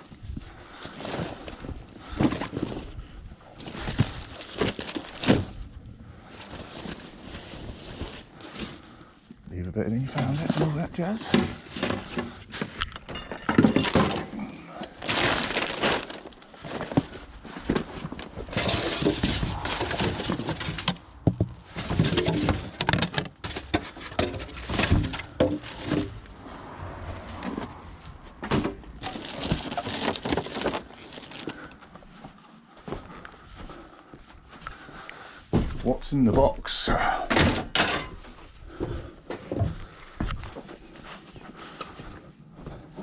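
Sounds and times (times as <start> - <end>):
scrap rattling and scraping: 10.1 - 31.7
scrap metal clattering and knocking: 10.2 - 14.5, 15.1 - 26.5, 37.4 - 38.4.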